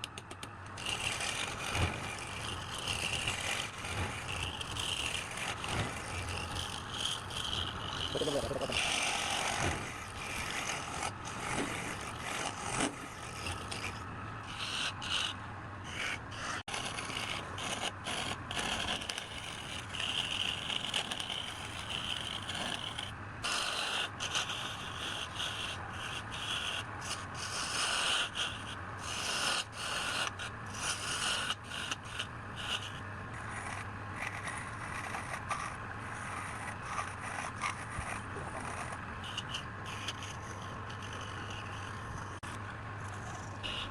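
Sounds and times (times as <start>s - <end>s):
tool scraping spinning wood: 0.0s - 43.9s
wood lathe humming: 0.8s - 17.8s.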